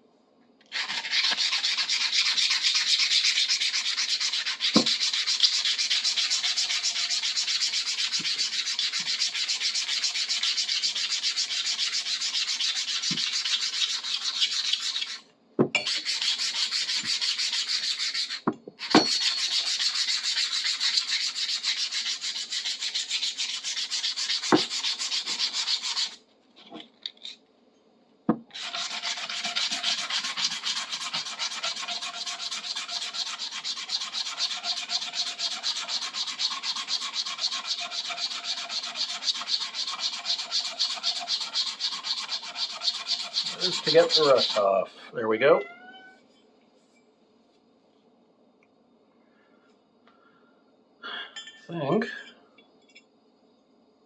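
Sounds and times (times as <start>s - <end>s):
sandpaper rubbing on rusty steel: 0.7s - 15.2s, 15.8s - 26.2s, 28.5s - 44.9s.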